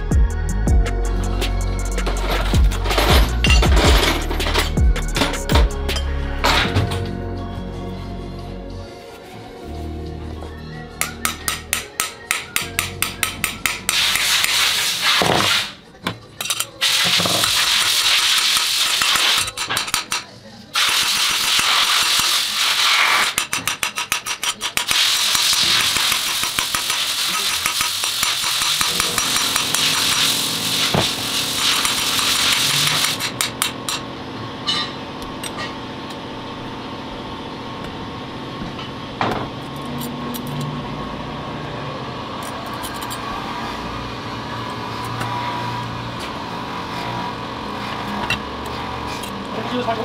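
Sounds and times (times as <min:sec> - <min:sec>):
mechanical hum: 0:00.0 - 0:50.0
loud machine hiss: 0:20.8 - 0:23.4, 0:24.9 - 0:33.2.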